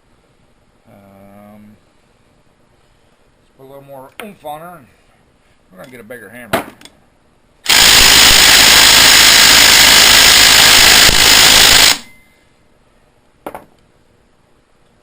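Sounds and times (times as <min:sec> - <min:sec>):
impact wrench hammering: 0:07.7 - 0:12.2.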